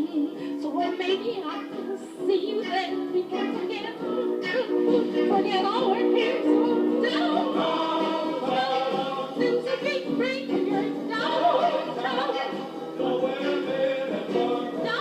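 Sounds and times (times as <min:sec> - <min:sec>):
several voices singing together: 0:07.0 - 0:15.0.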